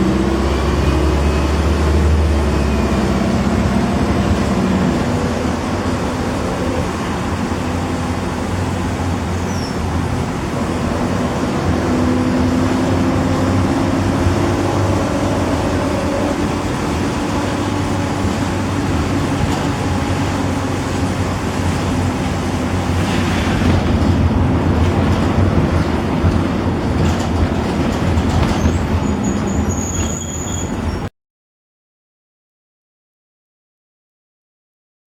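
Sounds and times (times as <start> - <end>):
bus engine drone: 0.0 - 31.1.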